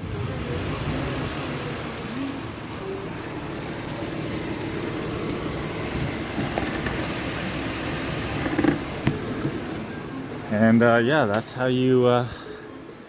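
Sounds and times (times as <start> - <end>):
car engine idling quietly: 0.0 - 13.0.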